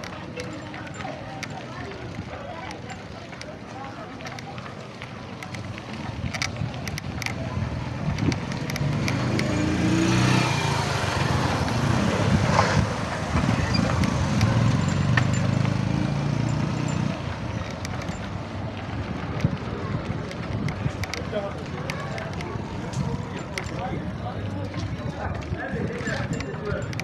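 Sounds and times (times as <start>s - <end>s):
vehicle engine passing by: 7.5s - 18.2s.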